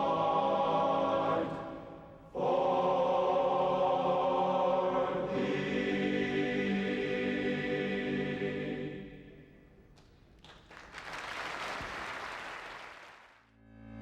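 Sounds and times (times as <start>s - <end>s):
choral music with held chords: 0.0s - 9.7s
music: 0.0s - 9.8s, 13.5s - 14.0s
applause: 9.9s - 13.5s.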